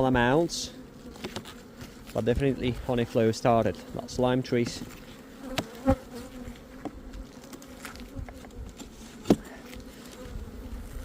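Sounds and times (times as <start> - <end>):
bees buzzing: 0.0 - 11.0.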